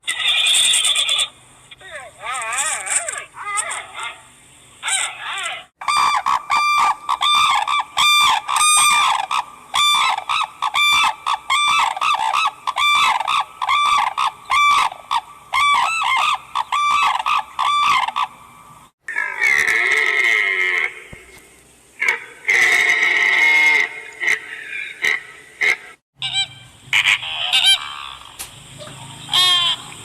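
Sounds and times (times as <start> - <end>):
geese honking: 4.8 - 18.3, 19.2 - 21.2, 22.0 - 30.0.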